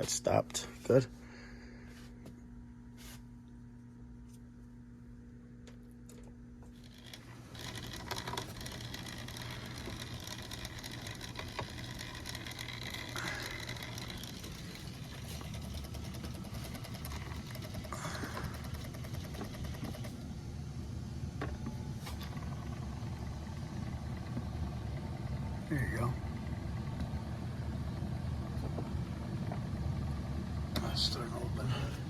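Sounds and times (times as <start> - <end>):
hvac equipment humming: 0.0 - 32.0
fast fine ticking: 6.8 - 20.2.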